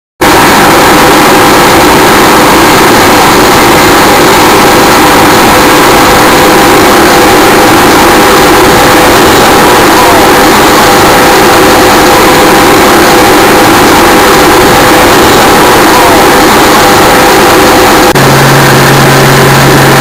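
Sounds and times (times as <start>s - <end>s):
boat engine running: 13.4s - 20.0s.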